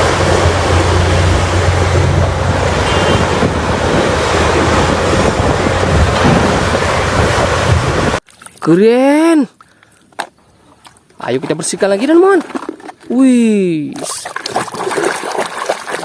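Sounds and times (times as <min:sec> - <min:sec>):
water spraying: 0:00.0 - 0:08.2.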